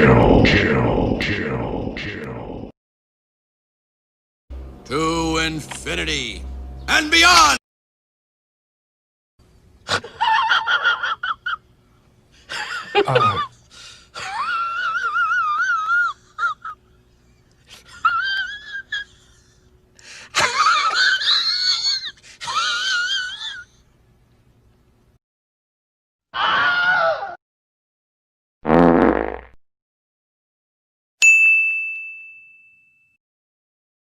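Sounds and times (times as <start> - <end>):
faint steady hum: 9.4 - 25.2.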